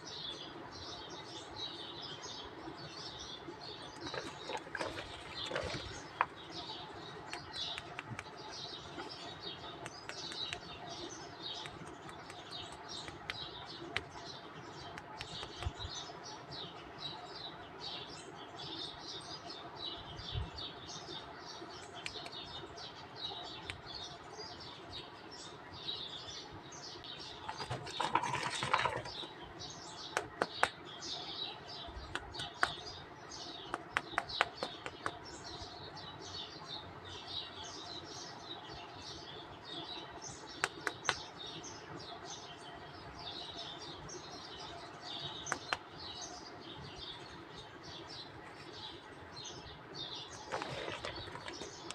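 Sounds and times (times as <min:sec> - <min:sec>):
small birds chirping: 0:00.0 - 0:51.9
sharp plastic clicks: 0:32.0 - 0:32.9, 0:40.5 - 0:41.3
rustling: 0:50.3 - 0:51.9.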